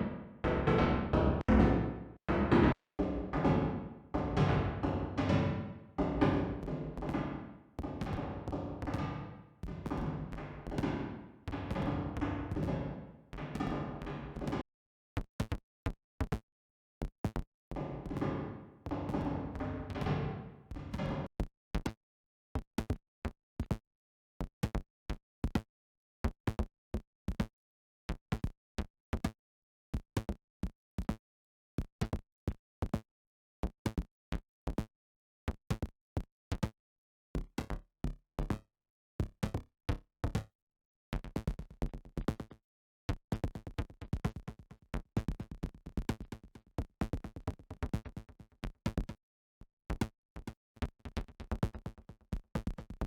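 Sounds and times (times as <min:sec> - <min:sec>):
electronic drum strikes: 0:00.0 - 0:14.6, 0:17.8 - 0:21.3.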